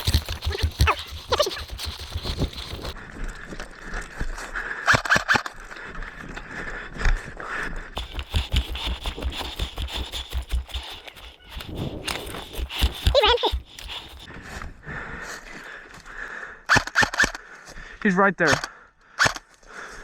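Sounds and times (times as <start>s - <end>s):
clothing and gear rustling: 0.0s - 3.9s, 8.0s - 14.8s
footsteps running: 0.0s - 4.7s, 5.7s - 14.6s.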